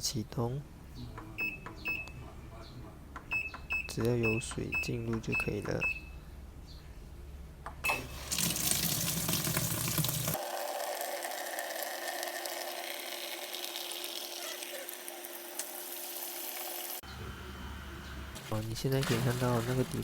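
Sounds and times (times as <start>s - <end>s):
water filling washing machine tub: 7.8s - 17.0s, 18.3s - 20.0s.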